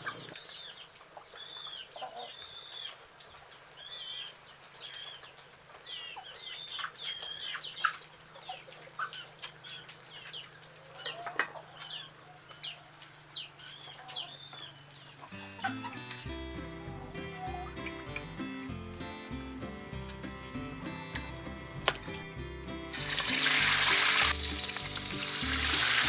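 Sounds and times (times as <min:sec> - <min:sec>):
chicks chirping: 0:22.9 - 0:26.0.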